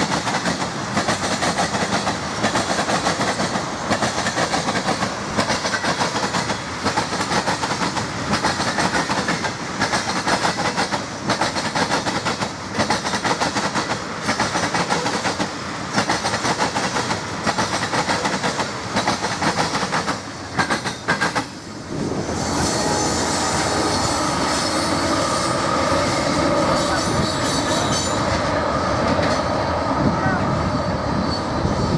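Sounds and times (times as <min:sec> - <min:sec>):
train wheels clicking over rail joints: 0:00.0 - 0:29.7
high wheel squeal: 0:22.2 - 0:28.4.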